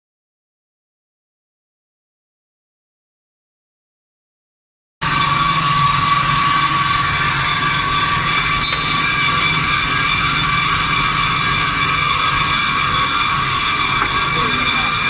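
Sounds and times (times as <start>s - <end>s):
band saw humming and whining: 5.0s - 15.0s.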